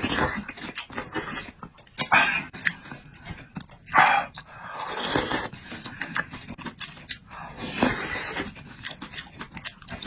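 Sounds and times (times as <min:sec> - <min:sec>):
wet chewing with small clicks: 0:00.0 - 0:10.0.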